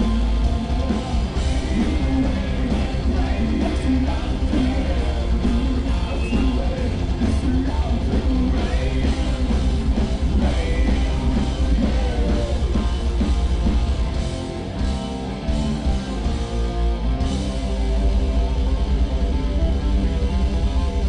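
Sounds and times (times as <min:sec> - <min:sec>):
person singing: 0:00.0 - 0:13.0
drums: 0:00.0 - 0:21.0
electric guitars: 0:00.0 - 0:21.0
heavy bass: 0:00.0 - 0:21.0.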